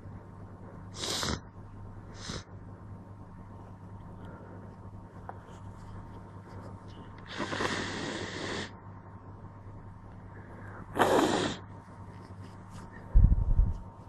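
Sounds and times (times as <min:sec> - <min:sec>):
person sneezing or blowing nose: 0:11.0 - 0:11.6.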